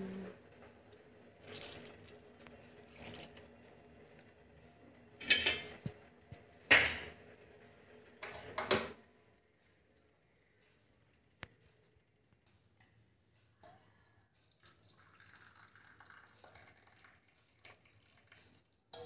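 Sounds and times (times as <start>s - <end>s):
metal utensils scraping a pan: 5.2s - 5.8s.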